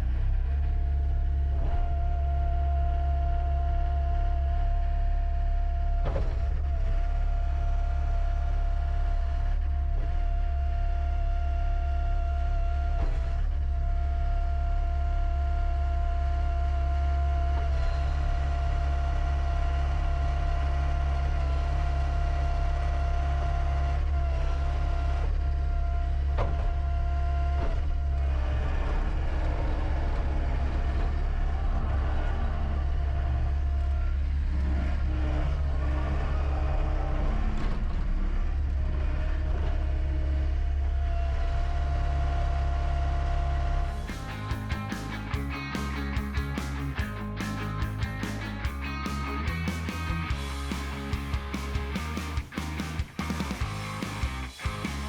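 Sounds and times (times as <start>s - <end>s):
diesel engine running: 40.1s - 55.0s.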